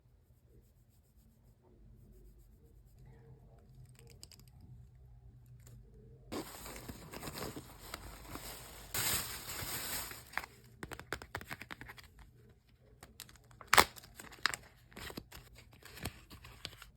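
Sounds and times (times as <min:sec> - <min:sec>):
packaging rustling and tearing: 0:06.3 - 0:12.0, 0:13.2 - 0:16.9.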